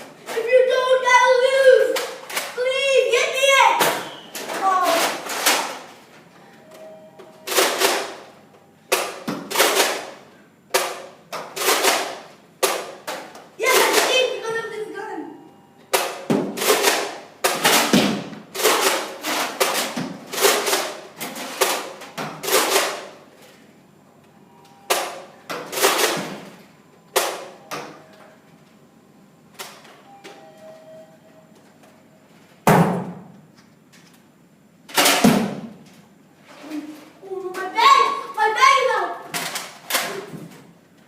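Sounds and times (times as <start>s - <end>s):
loud knocks and thumps: 32.6s - 33.3s.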